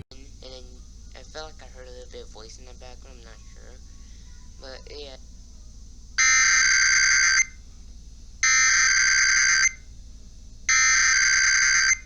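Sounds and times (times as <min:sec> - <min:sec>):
digital data tone bursts: 0:06.2 - 0:07.6, 0:08.4 - 0:09.8, 0:10.7 - 0:12.0.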